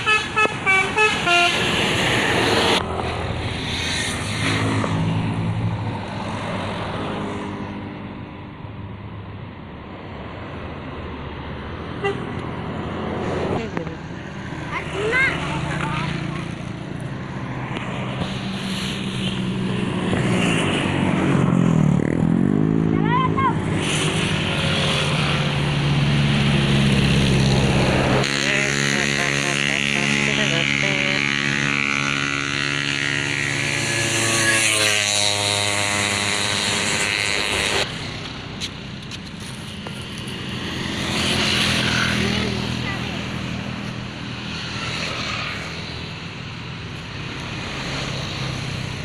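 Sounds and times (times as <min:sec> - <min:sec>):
bus multi-tone musical horn: 0:00.0 - 0:02.3, 0:12.0 - 0:12.3.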